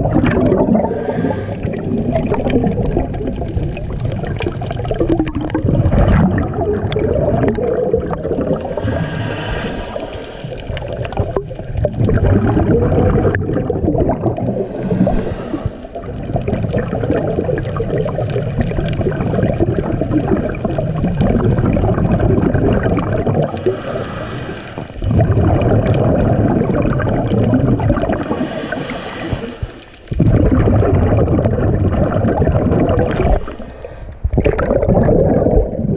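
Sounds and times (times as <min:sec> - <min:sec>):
exhaled bubbles rumbling: 0:00.0 - 0:35.9
scuba regulator inhale hiss: 0:00.8 - 0:01.8, 0:08.6 - 0:10.8, 0:14.4 - 0:16.0, 0:23.6 - 0:25.0, 0:28.2 - 0:30.2, 0:33.2 - 0:34.3.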